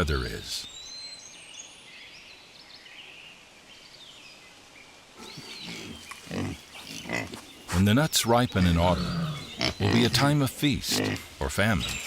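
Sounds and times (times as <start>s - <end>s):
faint forest birdsong: 0.0s - 12.0s
wild boar grunting: 5.2s - 12.0s.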